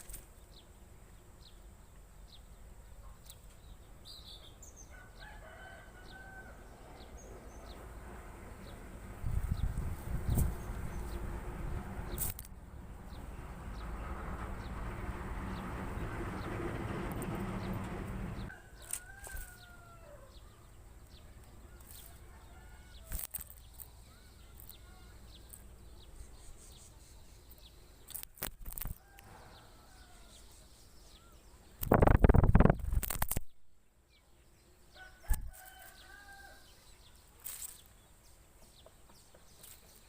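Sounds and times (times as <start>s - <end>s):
small birds chirping: 0.0s - 14.8s, 15.4s - 40.0s
rooster crowing: 4.9s - 7.2s, 17.2s - 20.6s, 21.6s - 23.2s, 29.0s - 30.5s, 34.9s - 36.7s.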